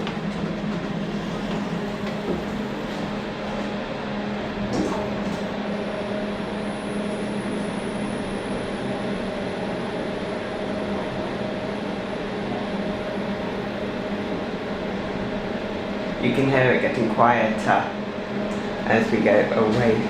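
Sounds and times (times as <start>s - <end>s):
lift motor humming: 0.0s - 20.0s.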